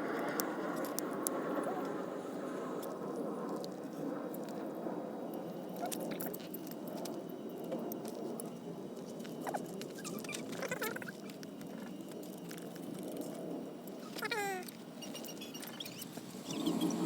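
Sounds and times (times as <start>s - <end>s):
short squeaky calls: 10.0s - 12.0s, 14.0s - 17.0s.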